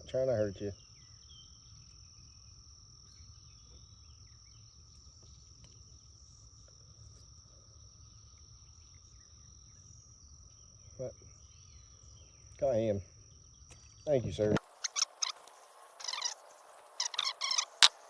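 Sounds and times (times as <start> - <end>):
crickets trilling: 0.1 - 18.0
faint chirps: 14.6 - 18.0.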